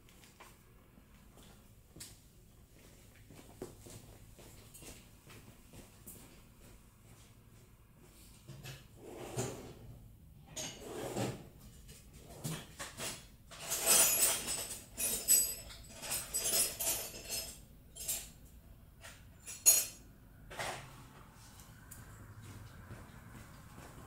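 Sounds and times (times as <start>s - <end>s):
metal tools clinking on metal: 13.0s - 18.4s, 19.0s - 20.0s.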